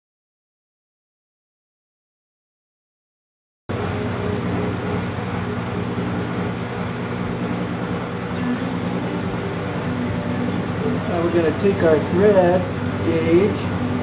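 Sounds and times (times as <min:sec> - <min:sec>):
metal lathe running: 0:03.7 - 0:14.0.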